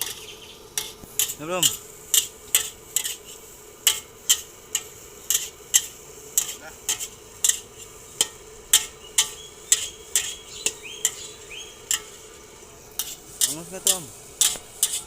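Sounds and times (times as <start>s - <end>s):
light sizzle: 0.0s - 15.0s
metal spatula clanking on wok: 3.8s - 11.2s, 11.8s - 12.2s.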